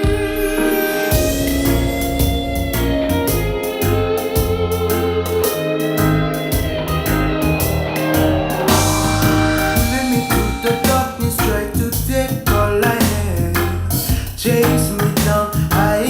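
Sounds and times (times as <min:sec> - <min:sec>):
instrumental rock band music: 0:00.0 - 0:16.0
rising whooshing sweep: 0:01.0 - 0:11.4.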